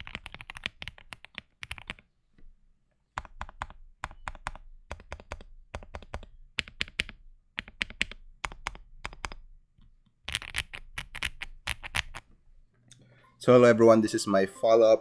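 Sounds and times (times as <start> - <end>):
mechanical keyboard typing: 0.0 - 2.0, 3.2 - 9.4, 10.3 - 12.2.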